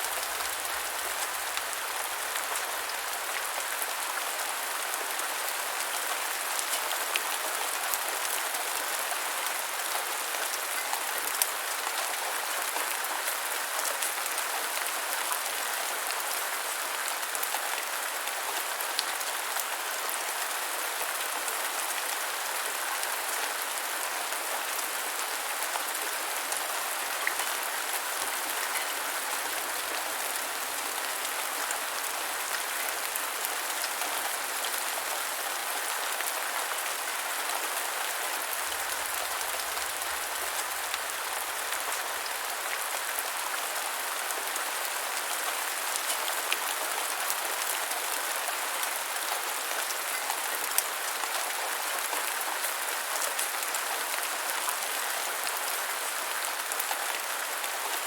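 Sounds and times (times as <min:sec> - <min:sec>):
rain hissing on ground: 0:23.5 - 0:47.5.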